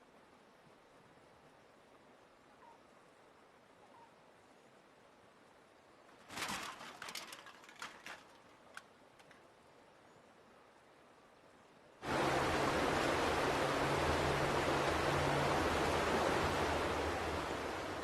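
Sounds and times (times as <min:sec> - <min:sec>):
rush of water: 0:12.0 - 0:18.0
water splashes: 0:12.0 - 0:18.0.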